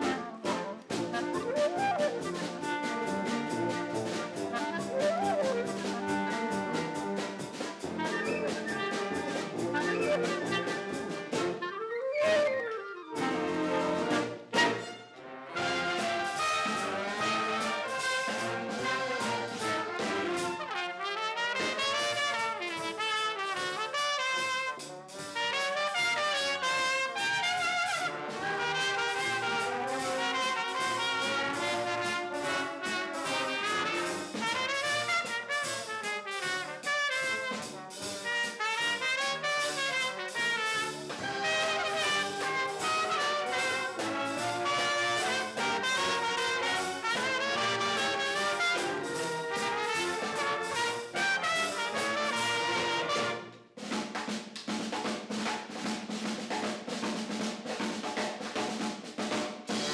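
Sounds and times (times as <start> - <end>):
steady percussive beat: 0.0 - 11.7, 13.2 - 59.9
brass band music: 0.0 - 54.2, 54.9 - 59.9.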